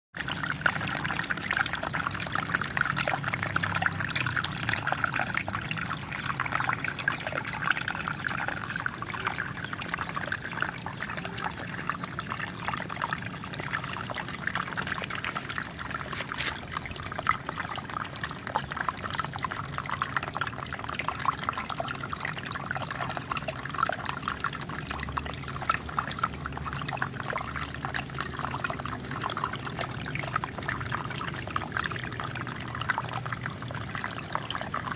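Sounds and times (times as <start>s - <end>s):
small waterfall splashing: 0.2s - 21.6s.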